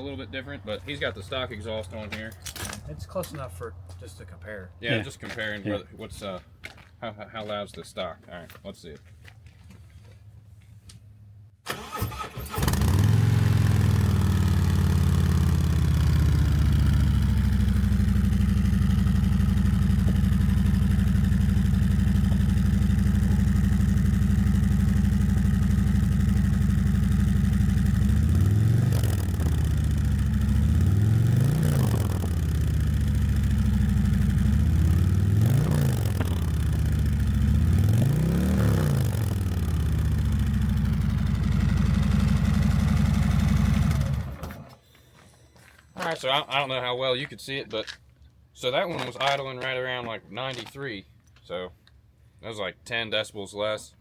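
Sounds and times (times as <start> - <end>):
motorcycle engine starting and idling: 11.6 - 44.8
motorcycle throttle blips: 12.8 - 44.6.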